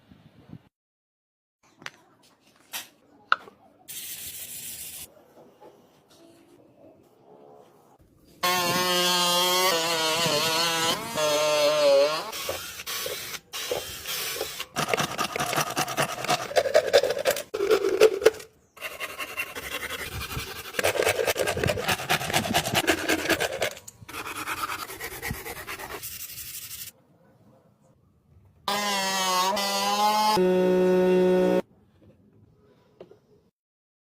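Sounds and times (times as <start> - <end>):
table saw blade cutting: 8.4 - 16.4.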